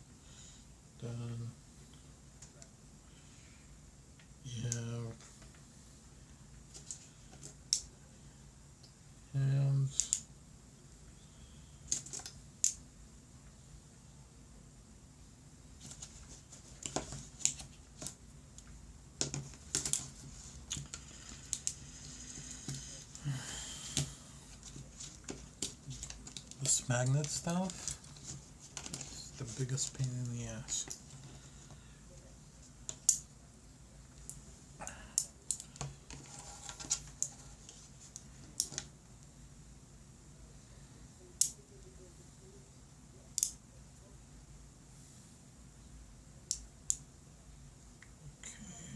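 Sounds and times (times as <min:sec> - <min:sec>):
magnetic pieces clicking together: 0:09.9 - 0:10.3, 0:16.8 - 0:21.8, 0:32.9 - 0:33.3, 0:43.3 - 0:43.6
magnetic toy parts clicking together: 0:43.4 - 0:43.6.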